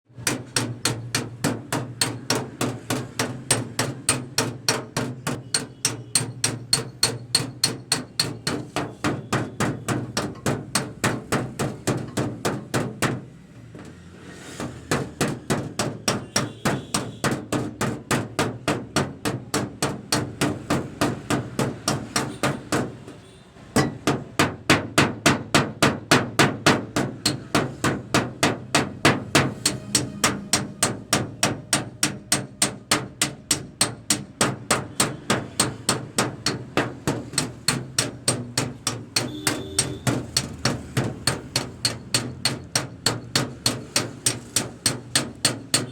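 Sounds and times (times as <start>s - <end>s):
hammer tapping metal panel: 0.1s - 14.0s, 14.6s - 45.9s.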